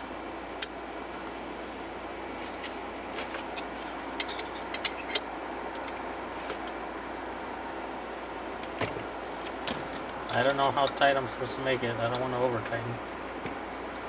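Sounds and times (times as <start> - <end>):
steady background noise: 0.0 - 14.0.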